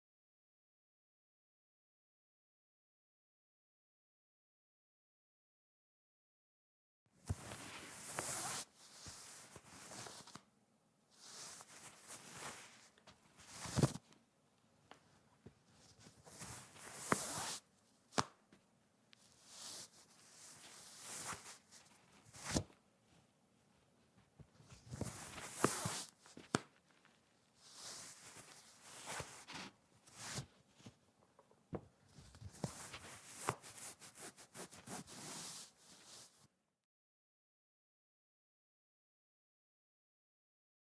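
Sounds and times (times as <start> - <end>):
fabric rustling and swishing: 19.3 - 22.7, 24.9 - 26.6.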